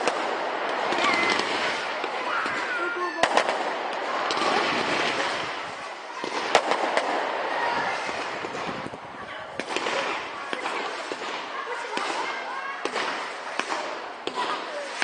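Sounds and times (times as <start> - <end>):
fireworks bangs: 0.0 - 15.0
fireworks crackling: 0.0 - 15.0.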